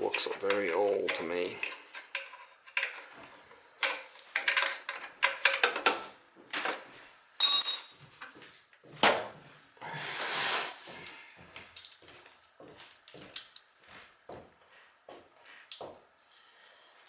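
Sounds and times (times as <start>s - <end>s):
metal tools clinking: 7.4s - 8.0s
bright metallic ring: 7.4s - 8.2s.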